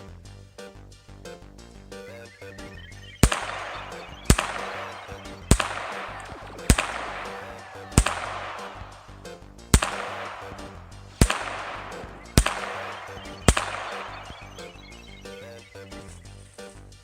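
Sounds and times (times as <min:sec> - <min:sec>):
handgun shots ringing: 0:03.2 - 0:15.7.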